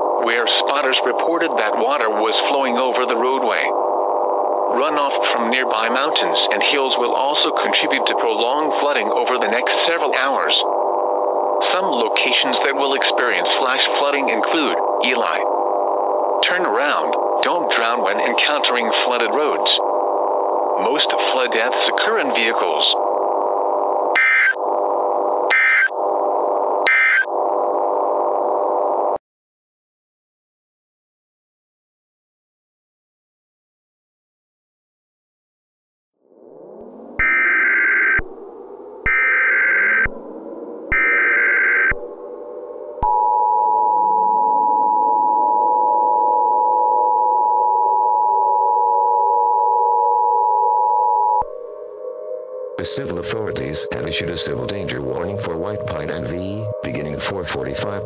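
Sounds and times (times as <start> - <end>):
droning background tone: 0.0 - 29.2, 36.5 - 58.0
warbling digital data bursts: 0.2 - 27.4, 36.4 - 43.0
two-tone alert signal: 24.1 - 24.6, 25.5 - 25.9, 26.8 - 27.3, 37.2 - 38.2, 39.1 - 40.1, 40.9 - 42.0.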